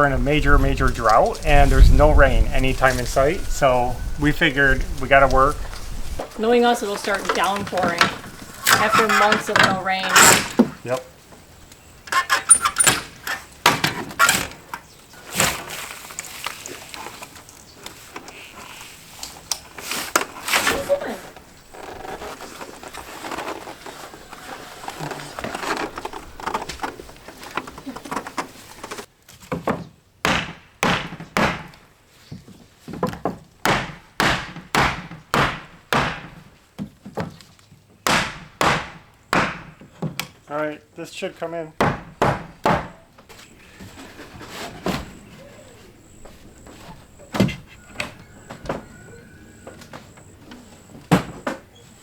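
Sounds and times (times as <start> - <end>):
hammer striking wood: 30.2 - 31.8, 33.6 - 36.4, 38.1 - 39.8, 41.8 - 43.0.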